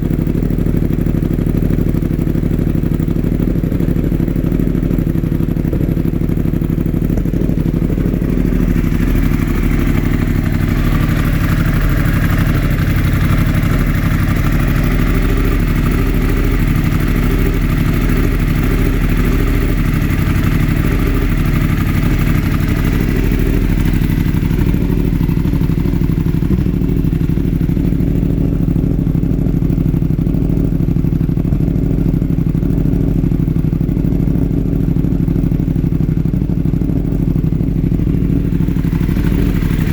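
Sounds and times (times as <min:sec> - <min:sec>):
motorcycle engine idling with misfire: 0:00.0 - 0:39.9.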